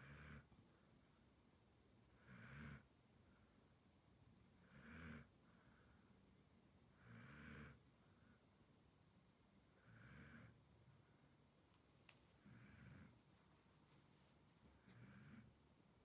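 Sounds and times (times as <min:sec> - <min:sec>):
dog snoring faintly: 0:00.0 - 0:00.5, 0:02.2 - 0:02.9, 0:04.6 - 0:05.4, 0:06.9 - 0:07.8, 0:09.8 - 0:10.6, 0:12.4 - 0:13.3, 0:14.7 - 0:15.6.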